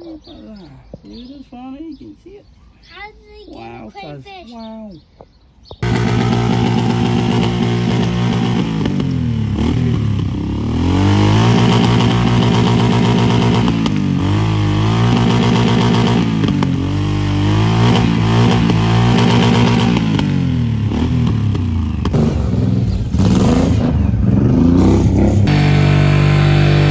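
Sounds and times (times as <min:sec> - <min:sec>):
vehicle engine revving: 0:05.8 - 0:26.9.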